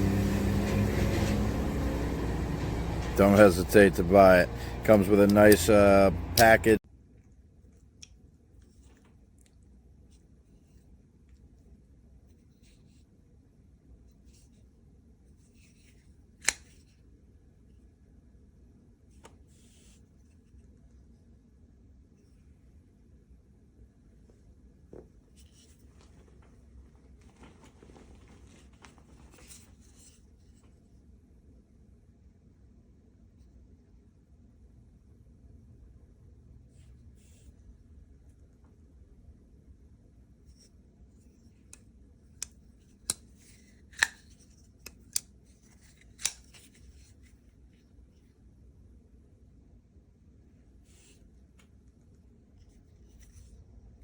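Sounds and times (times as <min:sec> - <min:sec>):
low steady hum: 0:00.0 - 0:12.6
scratchy rustles: 0:25.4 - 0:30.7
pocket knife clicking: 0:44.0 - 0:44.2, 0:46.0 - 0:46.6.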